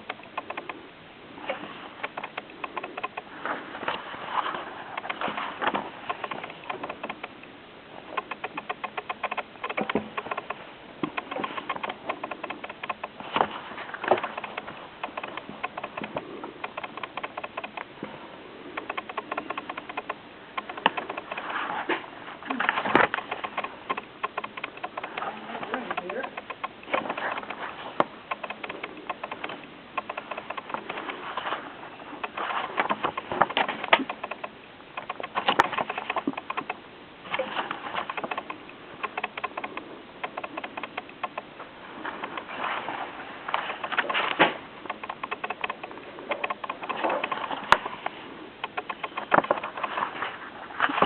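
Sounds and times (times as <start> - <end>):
book pages flipping: 42.1 - 51.0.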